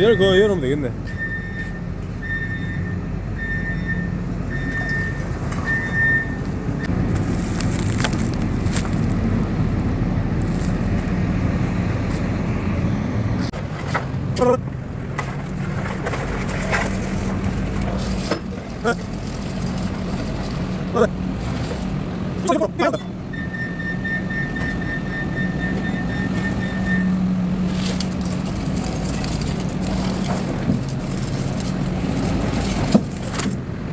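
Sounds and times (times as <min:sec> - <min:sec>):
high warning beep: 0:00.0 - 0:06.4, 0:23.3 - 0:27.1
vehicle engine running: 0:03.4 - 0:22.5.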